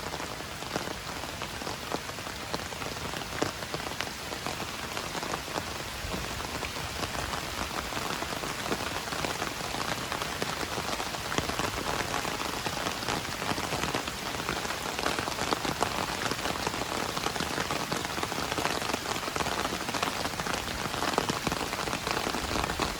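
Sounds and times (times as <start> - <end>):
rain on hard surfaces: 0.0 - 22.9.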